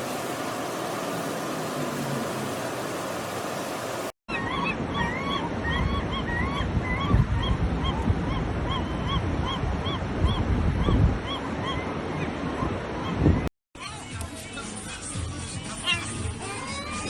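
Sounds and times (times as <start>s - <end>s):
gulls calling: 0.0s - 13.5s.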